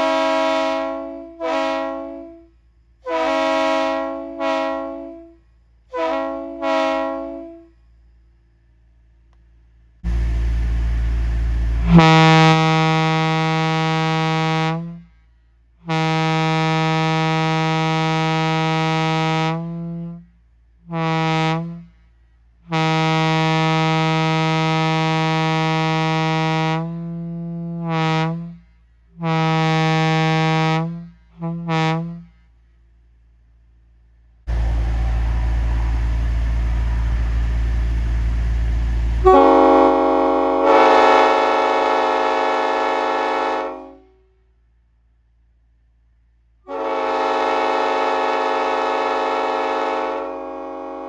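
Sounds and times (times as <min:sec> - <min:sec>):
railroad air horn blasts: 0:00.0 - 0:08.0, 0:11.6 - 0:32.6, 0:39.2 - 0:44.6, 0:46.6 - 0:51.0
rush of air: 0:34.5 - 0:39.2.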